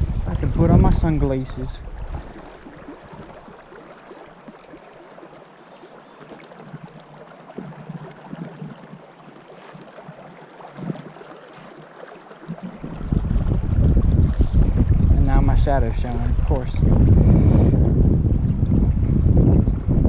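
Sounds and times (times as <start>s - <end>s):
faint low bumps: 0.0s - 3.6s, 12.4s - 20.0s
flowing river water: 0.0s - 20.0s.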